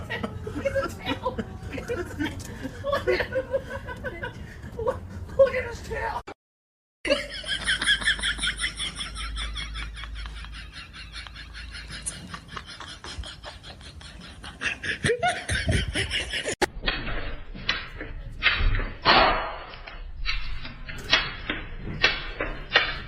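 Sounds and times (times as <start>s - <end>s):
people talking: 0.0s - 3.1s, 3.9s - 6.4s
people laughing: 0.0s - 5.8s, 7.1s - 16.6s.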